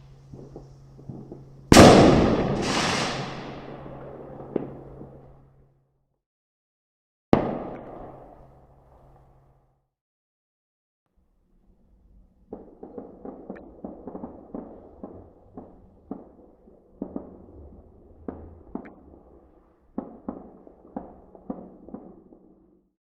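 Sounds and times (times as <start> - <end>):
firecrackers banging: 0.0 - 5.5, 12.4 - 22.6
low background rumble: 0.0 - 5.6, 11.6 - 19.6.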